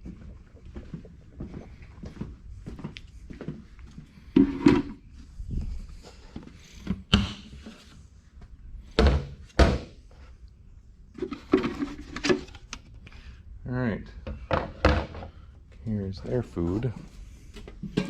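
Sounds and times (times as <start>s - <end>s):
buckets thunking set down: 4.4s - 5.0s, 17.6s - 18.0s.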